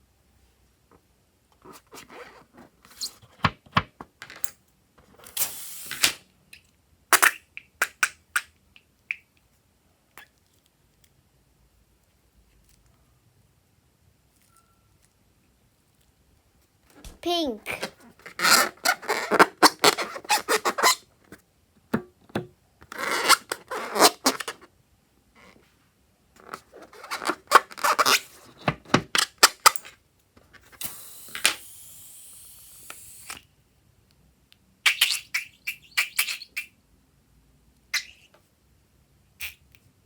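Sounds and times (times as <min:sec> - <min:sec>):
air hissing: 0:05.4 - 0:06.1, 0:30.8 - 0:33.4.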